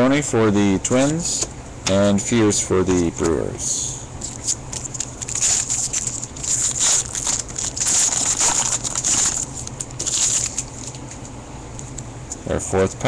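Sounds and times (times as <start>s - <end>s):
foil wrapper crinkling: 4.2s - 11.3s.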